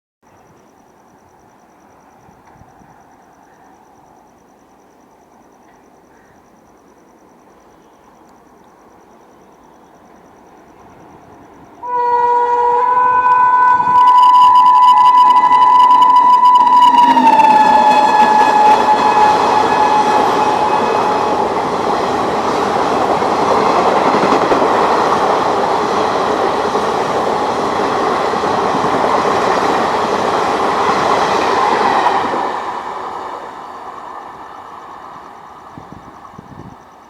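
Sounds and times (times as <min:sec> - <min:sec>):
train wheels rushing on rails: 0:10.1 - 0:37.0
shrill train horn: 0:11.8 - 0:22.8, 0:28.6 - 0:32.8.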